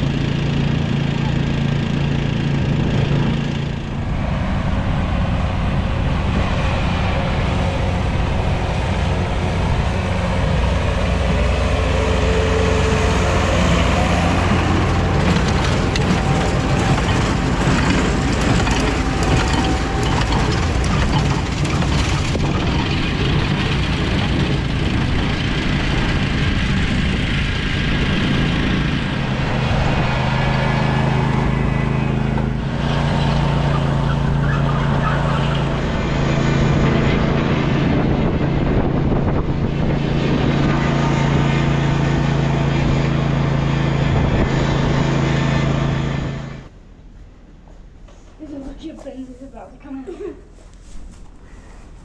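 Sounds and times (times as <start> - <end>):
vehicle engine running: 0.0 - 47.1
rapid clattering and knocking: 13.8 - 26.4.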